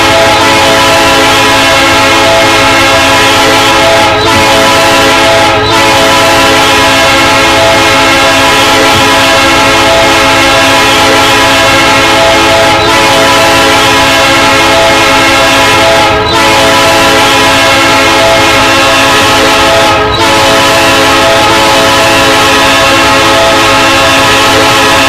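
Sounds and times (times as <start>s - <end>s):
locomotive air horn chord: 0.0s - 25.0s.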